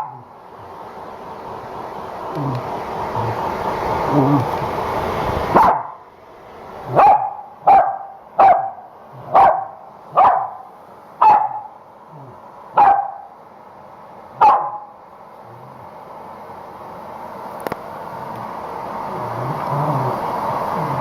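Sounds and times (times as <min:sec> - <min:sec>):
dog barking: 0:00.0 - 0:00.3, 0:05.5 - 0:06.0, 0:06.9 - 0:11.8, 0:12.8 - 0:13.3, 0:14.4 - 0:15.0.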